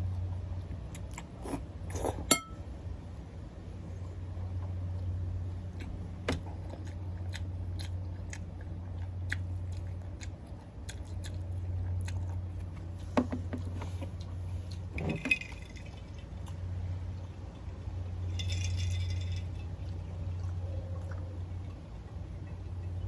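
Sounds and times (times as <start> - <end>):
person chewing noodles: 4.4 - 14.9.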